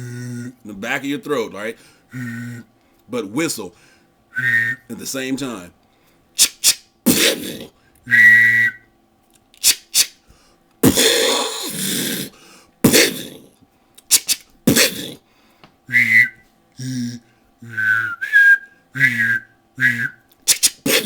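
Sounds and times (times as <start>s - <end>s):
throat whistle and hum: 2.1s - 2.7s, 4.3s - 4.9s, 6.4s - 9.0s, 9.6s - 10.2s, 14.1s - 15.2s, 15.9s - 21.0s
rushing mouth blast: 6.4s - 7.7s, 10.8s - 13.4s, 14.1s - 15.2s, 19.9s - 21.0s
beatboxed gunshot pops: 14.1s - 15.0s, 20.5s - 21.0s.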